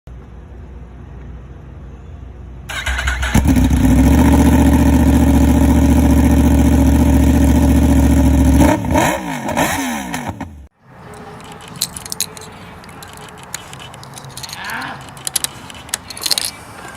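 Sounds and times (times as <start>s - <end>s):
motorcycle engine idling and revving: 2.7s - 10.7s.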